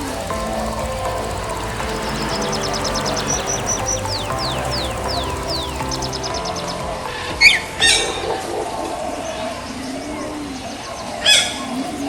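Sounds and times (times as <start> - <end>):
birds calling: 0.0 - 12.0
steady background hum: 0.0 - 12.0.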